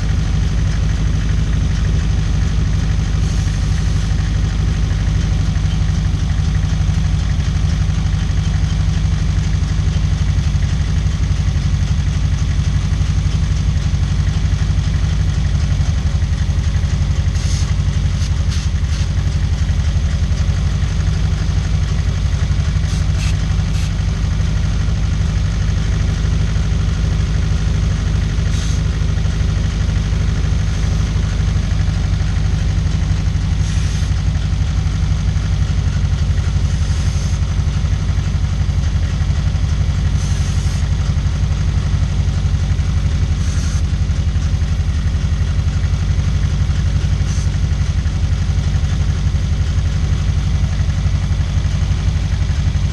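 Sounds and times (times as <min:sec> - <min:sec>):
car engine idling: 0:00.0 - 0:52.9
aerosol spray hisses: 0:17.4 - 0:19.1, 0:22.8 - 0:23.9, 0:28.5 - 0:28.8, 0:33.6 - 0:34.1, 0:36.7 - 0:37.4, 0:40.2 - 0:40.8, 0:43.4 - 0:43.8.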